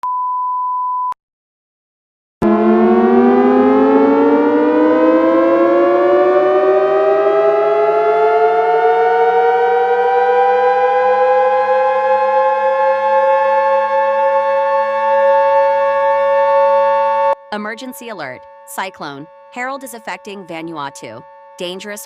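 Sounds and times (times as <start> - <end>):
wailing siren winding up: 2.4 - 22.0
steady alert beep: 17.6 - 22.0.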